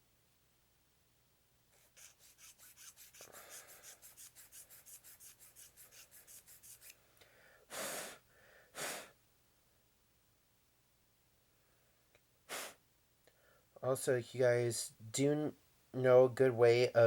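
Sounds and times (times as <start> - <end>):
file rasping on plastic: 1.8 - 7.0
puffs of breath: 3.2 - 4.0, 7.0 - 9.2, 12.5 - 13.8.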